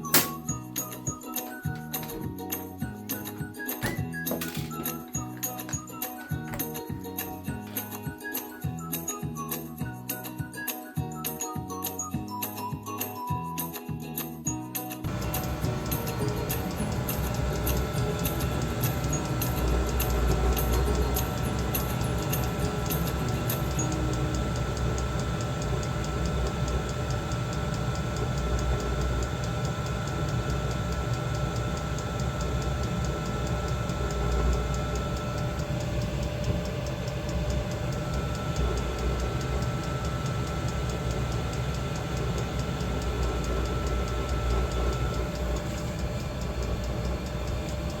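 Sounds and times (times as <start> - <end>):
fuel pump ticking: 0.0 - 8.8, 15.1 - 48.0
diesel heater blower rumble: 15.0 - 48.0.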